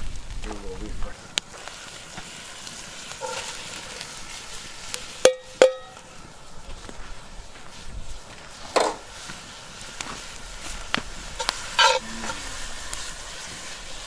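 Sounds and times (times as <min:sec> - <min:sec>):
meat and onions sizzling: 0:00.0 - 0:14.0
utensil clanking on metal pot: 0:05.2 - 0:06.0.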